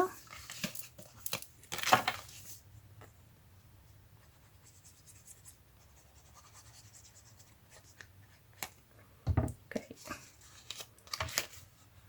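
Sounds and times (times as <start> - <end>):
paper rustling: 0.2 - 2.6.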